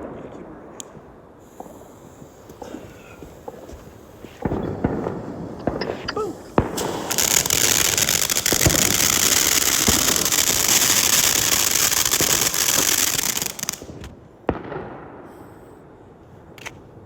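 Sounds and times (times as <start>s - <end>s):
fireworks crackling: 0.0s - 15.6s
sharp firework pop: 0.8s - 9.2s.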